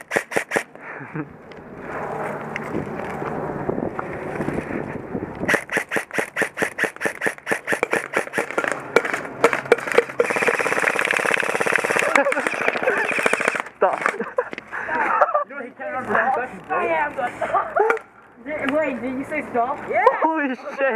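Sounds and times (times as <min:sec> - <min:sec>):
airsoft guns firing: 0:00.0 - 0:00.7, 0:05.5 - 0:14.2.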